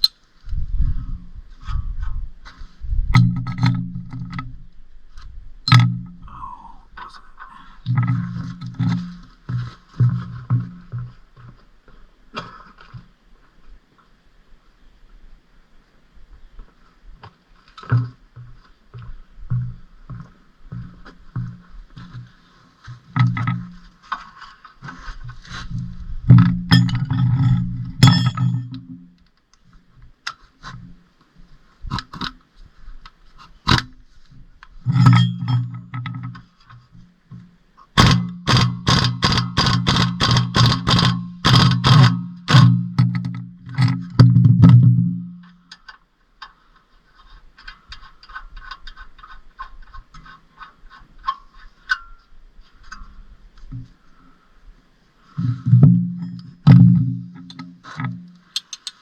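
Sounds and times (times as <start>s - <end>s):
sharp metal knocks: 5.7s - 6.2s, 26.3s - 28.9s, 34.9s - 36.4s, 38.0s - 45.2s, 55.6s - 59.0s.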